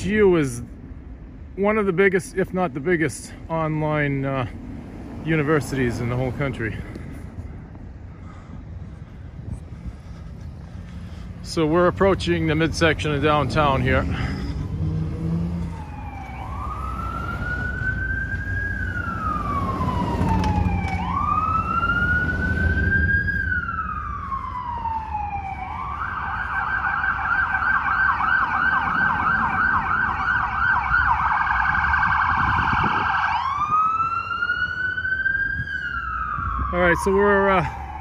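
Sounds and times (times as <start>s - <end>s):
low rumble of street traffic: 0.0s - 38.0s
emergency siren wailing and yelping: 10.1s - 38.0s.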